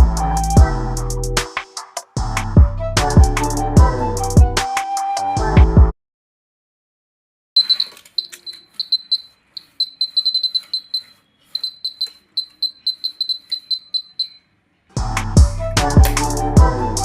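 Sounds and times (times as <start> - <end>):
high buzzer beeps: 7.6 - 14.4.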